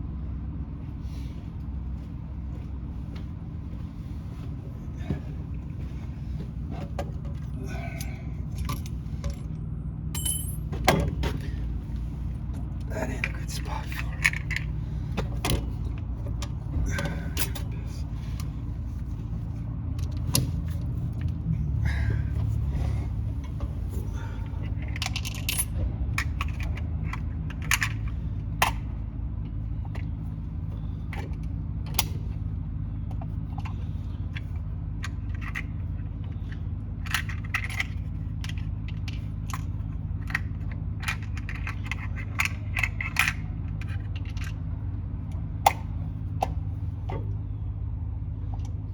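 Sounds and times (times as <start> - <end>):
steady low hum: 0.0 - 48.9
small metallic clicks and clinks: 10.2 - 10.7.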